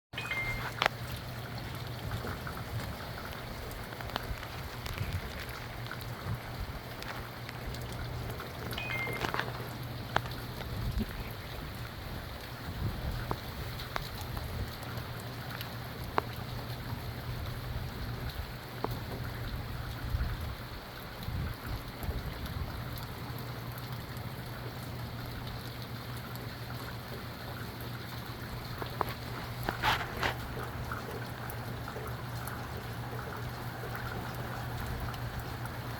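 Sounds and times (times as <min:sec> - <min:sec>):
single raindrops ticking: 0:00.2 - 0:11.0
steady rain falling: 0:00.2 - 0:35.9
wind rumbling on microphone: 0:01.2 - 0:08.4, 0:10.0 - 0:15.0, 0:16.0 - 0:23.0.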